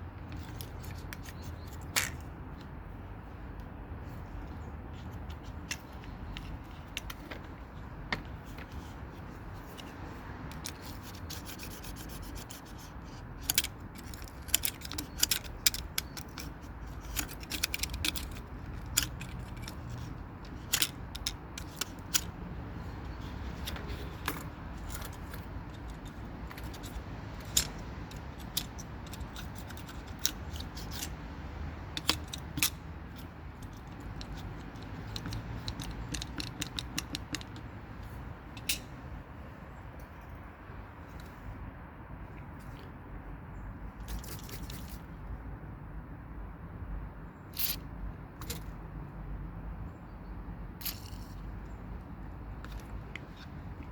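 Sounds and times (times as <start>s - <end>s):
scooter wheel clicking: 10.5s - 31.2s, 31.9s - 38.9s.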